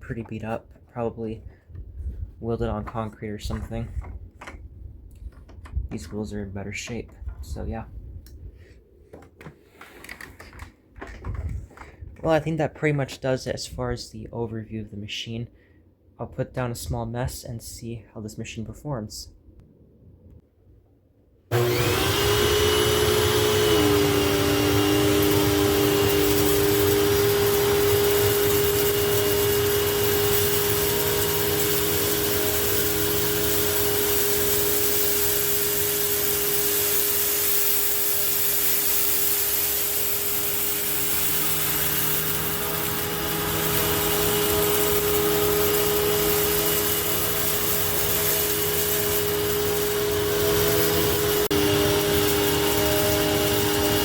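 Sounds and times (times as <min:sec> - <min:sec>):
upright vacuum cleaner running: 0:21.5 - 0:54.0.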